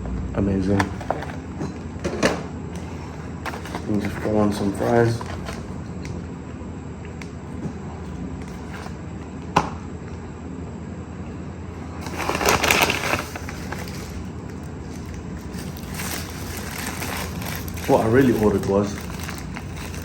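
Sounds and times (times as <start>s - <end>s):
steady low hum: 0.0s - 20.0s
paper rustling: 2.8s - 5.8s, 12.0s - 20.0s.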